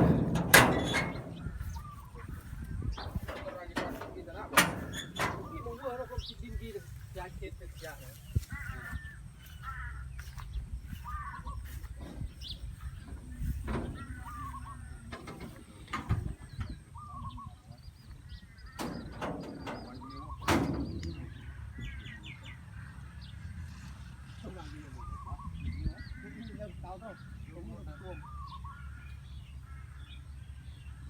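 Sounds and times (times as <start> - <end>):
sharp knocks: 0.0 - 5.8
steady low rumble: 0.0 - 23.7
birds chirping and clucking: 0.0 - 31.0.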